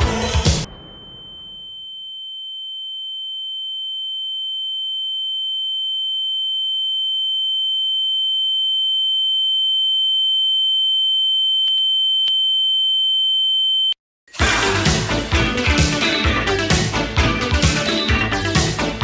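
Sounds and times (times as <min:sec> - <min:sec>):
music: 0:00.0 - 0:00.7, 0:14.3 - 0:19.0
high-pitched electronic beep tone: 0:00.6 - 0:02.6.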